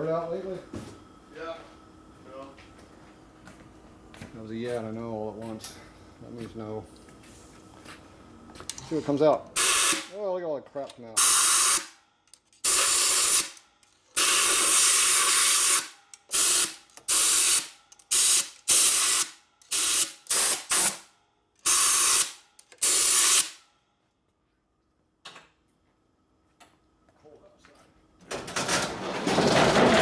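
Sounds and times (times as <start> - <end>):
compressed air hissing bursts: 9.6 - 10.1, 11.2 - 12.0, 14.2 - 21.0, 21.6 - 23.6.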